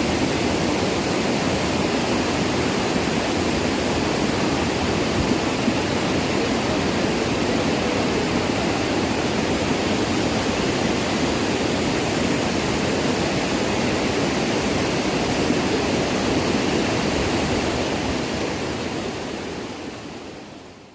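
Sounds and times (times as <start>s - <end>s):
waterfall roaring: 0.0s - 20.9s.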